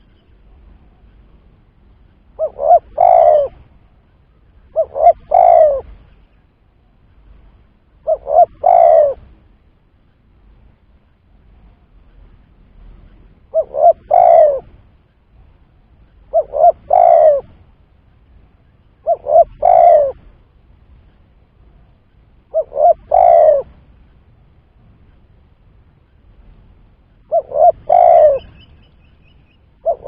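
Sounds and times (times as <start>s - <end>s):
dove cooing: 2.4s - 3.7s, 4.7s - 6.0s, 8.0s - 9.3s, 13.5s - 14.8s, 16.3s - 17.6s, 19.0s - 20.4s, 22.5s - 23.8s, 27.2s - 30.0s.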